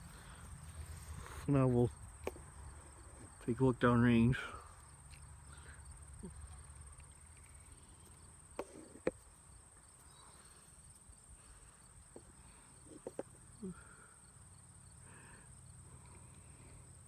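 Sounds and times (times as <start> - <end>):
insects buzzing: 0.0 - 17.0.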